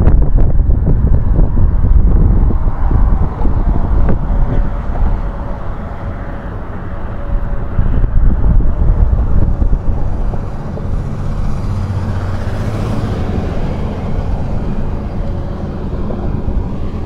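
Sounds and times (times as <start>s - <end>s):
traffic rumble: 0.0s - 17.0s
wind buffeting microphone: 0.0s - 17.0s
vehicle passing: 0.5s - 17.0s.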